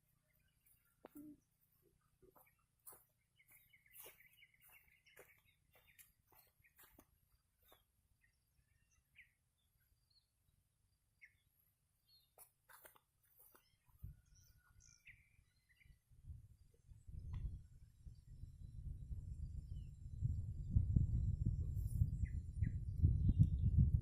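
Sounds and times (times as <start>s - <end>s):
faint bird chirps: 0.0s - 20.4s
wind rumble on microphone: 13.9s - 24.0s.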